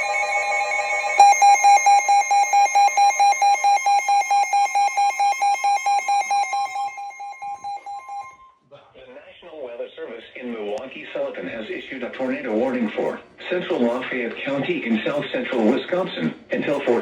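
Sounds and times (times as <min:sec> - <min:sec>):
rapid beeping: 0:00.0 - 0:08.5
steady electronic alert tone: 0:00.0 - 0:08.5.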